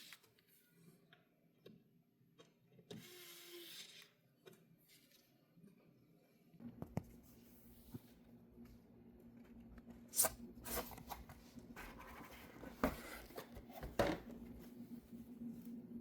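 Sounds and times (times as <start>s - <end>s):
faint steady hum: 6.5s - 16.0s.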